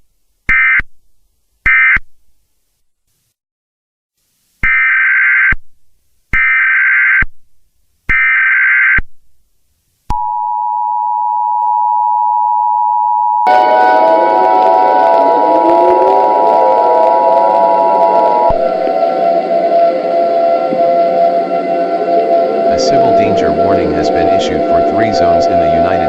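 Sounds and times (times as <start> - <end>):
steady two-tone beep: 10.1 - 13.6
warbling digital data tones: 13.4 - 26.0
harsh noise with gliding pitches: 13.5 - 26.0.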